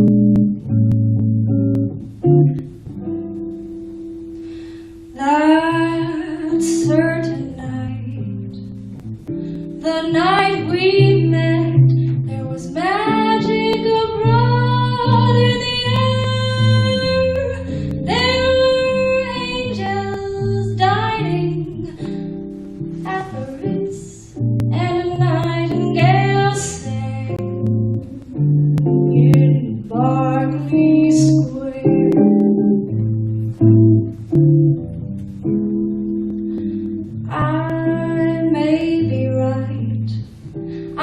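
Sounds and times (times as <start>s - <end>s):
plucked guitar: 0.0s - 41.0s
woman singing: 5.2s - 8.6s, 9.8s - 22.3s, 22.9s - 32.5s, 37.2s - 40.4s.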